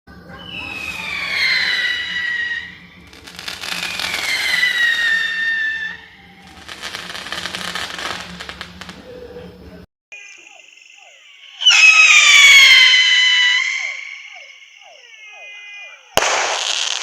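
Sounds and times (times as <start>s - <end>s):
firework whistles falling in pitch: 0.4s - 9.0s, 11.5s - 17.0s
firework crackling: 0.6s - 9.0s, 16.1s - 17.0s.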